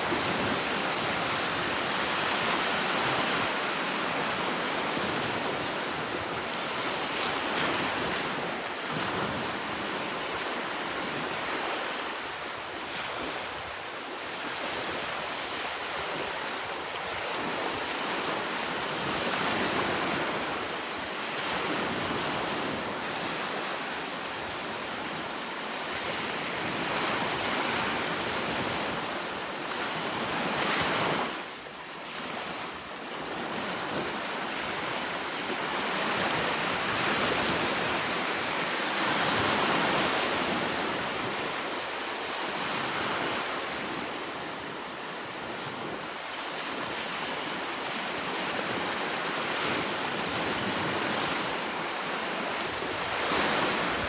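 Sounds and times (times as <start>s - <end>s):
sea waves breaking: 48.2s - 54.0s.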